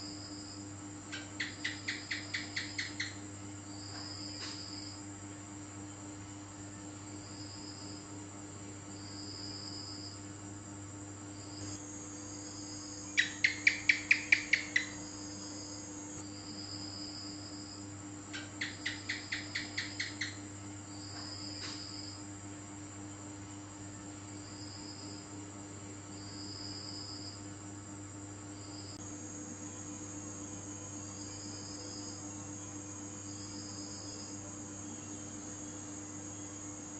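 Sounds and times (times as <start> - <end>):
crickets trilling: 0.0 - 36.9
steady low hum: 0.0 - 36.9
gecko chirping: 1.1 - 3.2, 13.2 - 15.0, 18.4 - 20.4.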